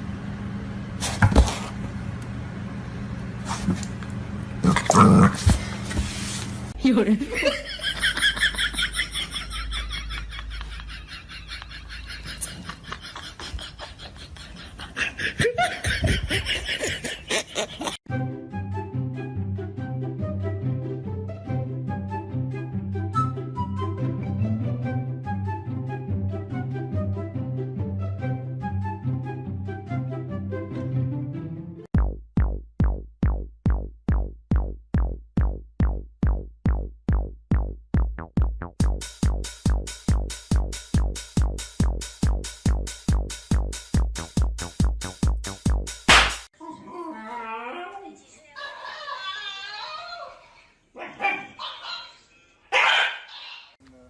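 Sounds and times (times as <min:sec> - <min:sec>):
people laughing loudly: 0:07.2 - 0:18.0
background music with bass line: 0:18.1 - 0:46.4.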